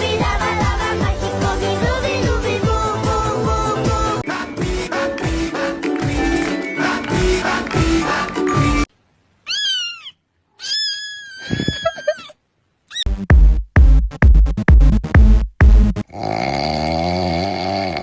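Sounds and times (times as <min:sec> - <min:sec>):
background music: 0:00.0 - 0:08.9
cat meowing: 0:09.4 - 0:12.3.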